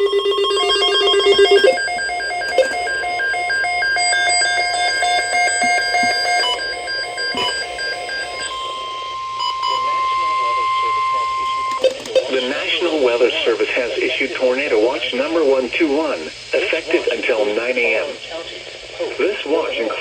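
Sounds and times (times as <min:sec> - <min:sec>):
pulsing pure alert tones: 0:00.0 - 0:12.4
trilling electronic alert tone: 0:00.0 - 0:12.4.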